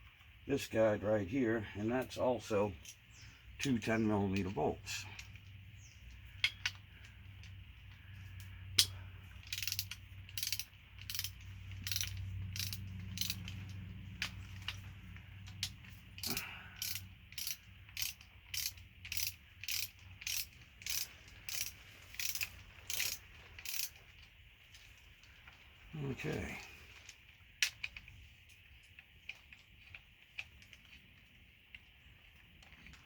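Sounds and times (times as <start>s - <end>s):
ratchet wrench clicking: 6.1s - 14.8s, 15.4s - 24.2s.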